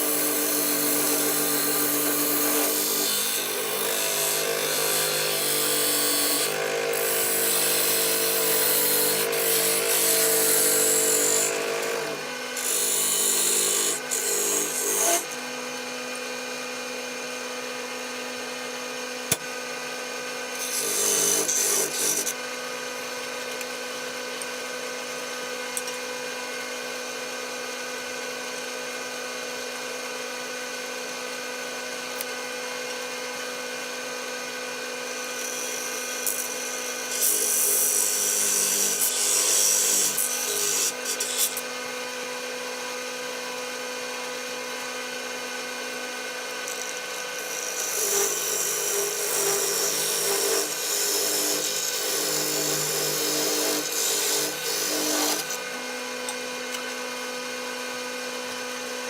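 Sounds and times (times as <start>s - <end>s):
tool cutting spinning wood: 0.0s - 15.4s, 46.5s - 57.0s.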